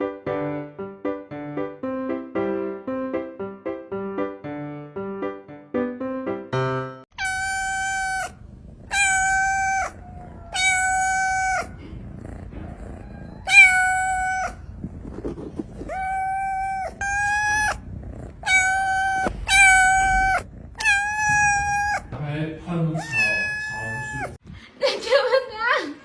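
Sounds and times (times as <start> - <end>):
kitten meowing: 7.1 - 12.0, 12.6 - 22.2, 22.9 - 24.4.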